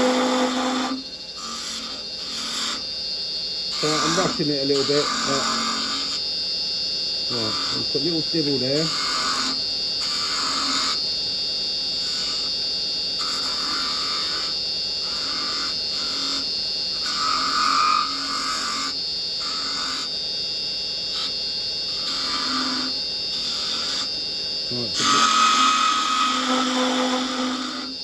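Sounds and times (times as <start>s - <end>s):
chisel cutting wood on lathe: 0.0s - 2.8s, 3.7s - 6.2s, 7.3s - 11.0s, 13.2s - 16.4s, 17.0s - 20.1s, 21.9s - 24.1s, 24.7s - 28.0s
lathe high whine: 0.0s - 28.0s.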